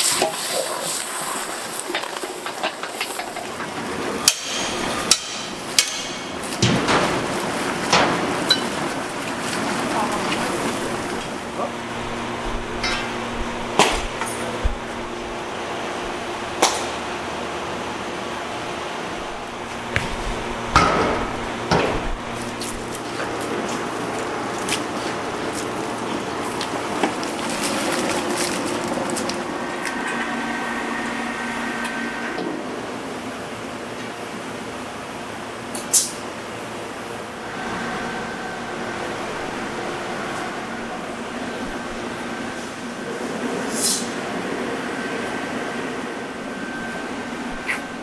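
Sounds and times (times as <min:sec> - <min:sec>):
workshop noise: 0:00.0 - 0:34.8, 0:35.6 - 0:48.0
factory machinery humming: 0:00.0 - 0:48.0
faint machine tones: 0:44.8 - 0:48.0.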